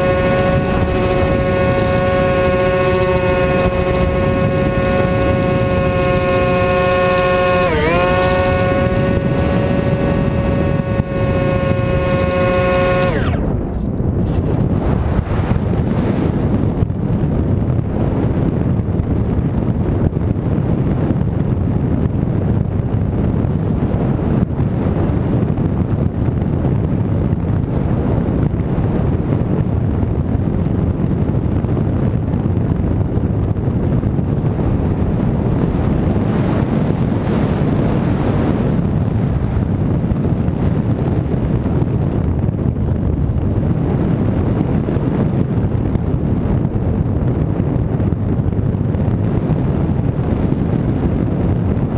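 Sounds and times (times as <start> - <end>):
thin high whine: 0.0 - 16.2
wind buffeting microphone: 0.0 - 51.9.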